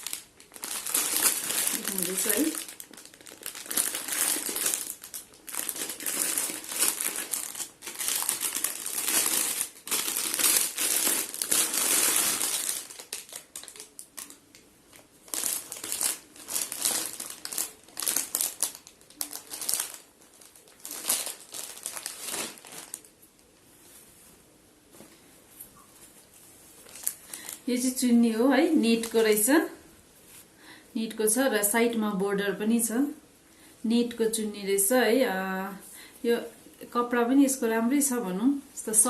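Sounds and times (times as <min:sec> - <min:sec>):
packaging crinkling and rustling: 0:00.0 - 0:23.2, 0:26.0 - 0:27.7.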